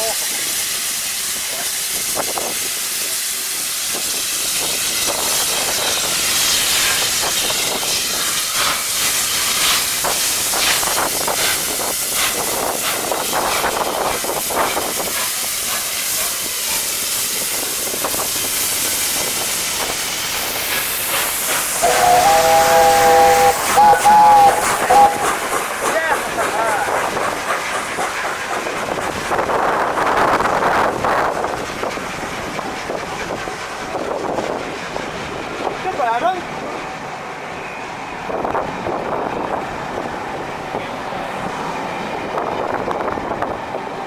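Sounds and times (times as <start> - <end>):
steam hissing: 0.0 - 44.0
locomotive exhaust beats: 20.0 - 35.9
multi-tone train whistle: 21.8 - 25.5.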